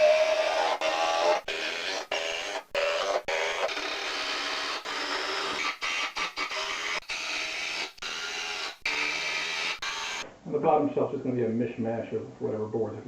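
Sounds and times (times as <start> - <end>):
power drill running: 0.0 - 10.2.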